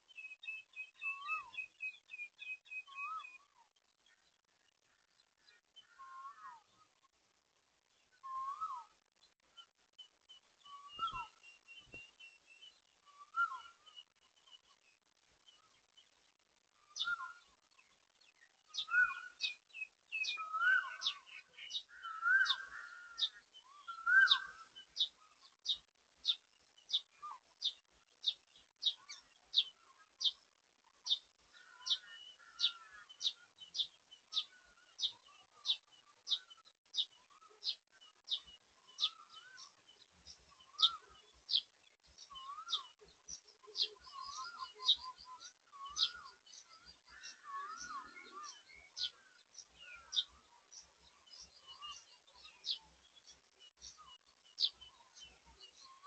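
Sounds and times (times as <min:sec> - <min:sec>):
bird sharp high calls: 0:10.7 - 0:12.1, 0:18.7 - 0:29.2, 0:31.1 - 0:39.7, 0:43.7 - 0:50.4
bird warbling calls: 0:20.2 - 0:29.2, 0:31.1 - 0:38.4, 0:43.6 - 0:50.5.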